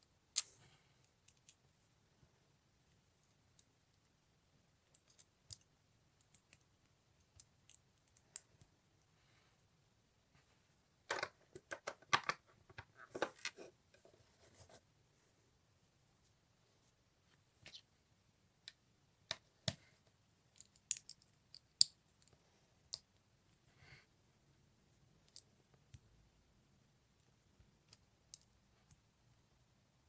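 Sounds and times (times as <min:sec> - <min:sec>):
plastic bricks clicking: 0:11.1 - 0:13.6.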